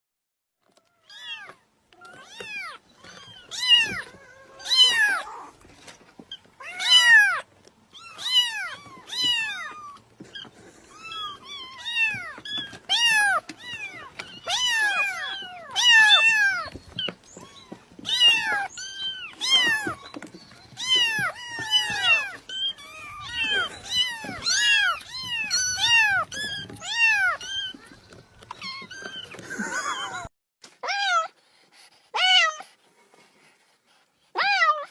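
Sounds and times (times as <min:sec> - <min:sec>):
cat meowing: 0:01.0 - 0:05.5, 0:06.6 - 0:27.9.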